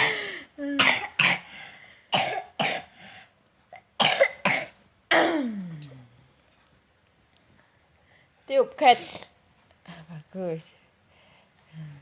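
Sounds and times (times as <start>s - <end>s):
young child coughing: 0.0s - 1.5s, 2.1s - 2.9s, 4.0s - 5.6s.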